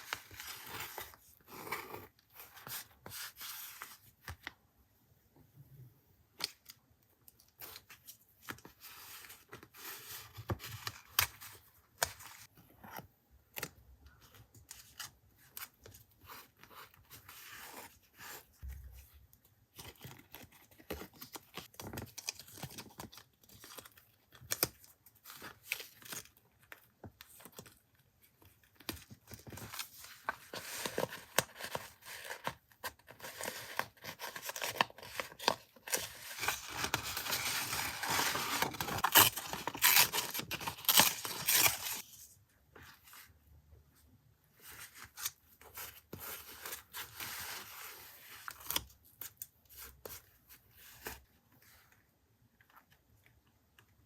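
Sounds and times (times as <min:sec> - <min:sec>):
paper tearing and crinkling: 0:33.4 - 0:42.0.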